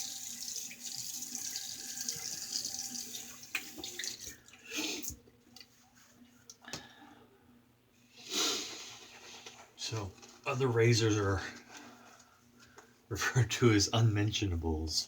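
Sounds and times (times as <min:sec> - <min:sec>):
tap water running into sink: 0:00.0 - 0:04.4.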